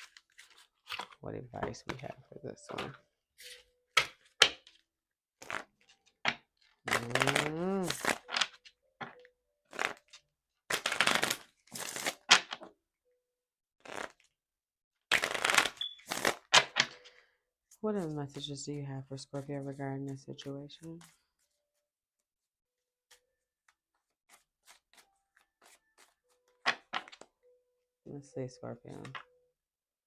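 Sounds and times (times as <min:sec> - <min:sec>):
cards being shuffled: 0:00.0 - 0:02.1, 0:05.4 - 0:12.6, 0:13.8 - 0:14.3, 0:15.1 - 0:17.2, 0:22.4 - 0:27.3.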